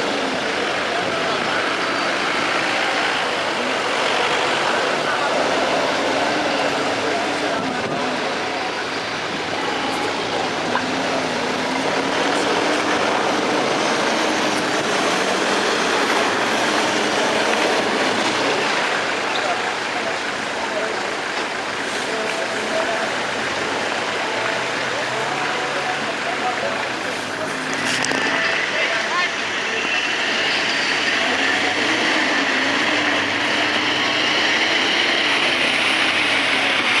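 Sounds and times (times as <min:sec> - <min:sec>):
vehicle engine drone: 0:00.0 - 0:37.0
loud rushing noise: 0:26.7 - 0:37.0.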